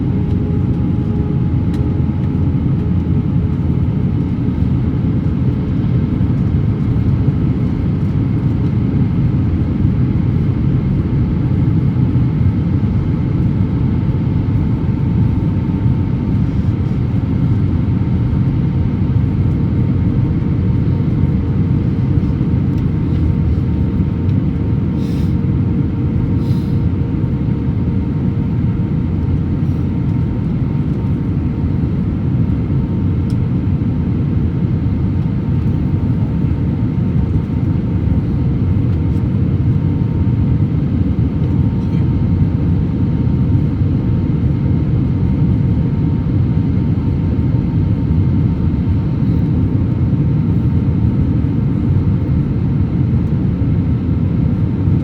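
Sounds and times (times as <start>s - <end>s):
airplane cabin rumble: 0.0s - 55.0s.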